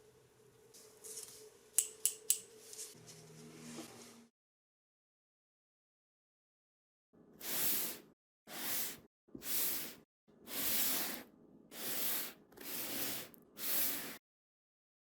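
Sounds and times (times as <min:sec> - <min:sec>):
short bursts of hissing: 0:07.4 - 0:11.2, 0:11.8 - 0:14.2.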